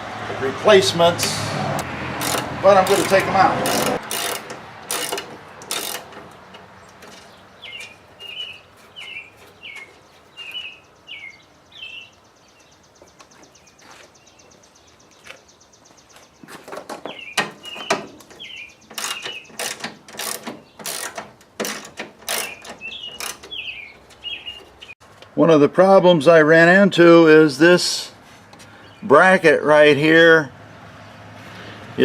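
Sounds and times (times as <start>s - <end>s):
ratchet clicking: 2.2s - 7.3s, 18.9s - 23.6s
screws squeaking: 2.2s - 10.6s, 17.3s - 24.9s.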